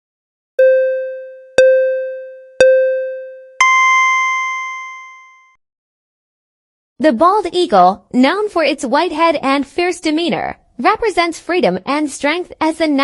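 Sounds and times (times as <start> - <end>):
electronic countdown beeps: 0.6 - 4.6.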